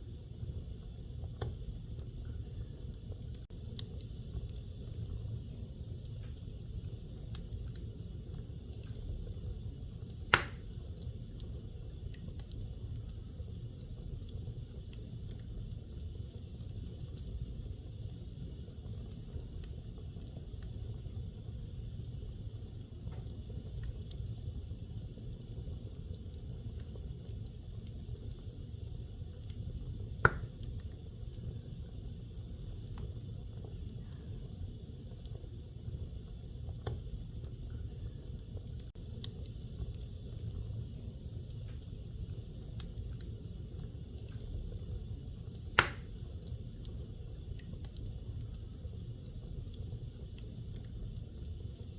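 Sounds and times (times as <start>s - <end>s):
fire crackling: 0.0s - 51.9s
wood fire flames rumbling: 0.0s - 51.9s
sharp loud pops: 10.3s - 10.7s, 45.8s - 46.1s.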